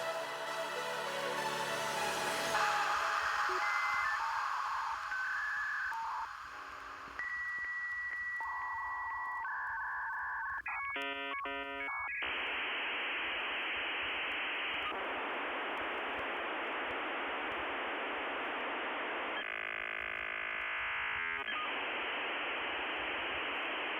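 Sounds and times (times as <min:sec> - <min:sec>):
telephone line hiss: 0:02.2 - 0:23.9
many held tones: 0:02.6 - 0:23.9
touch-tone dialing beeps: 0:07.2 - 0:12.2.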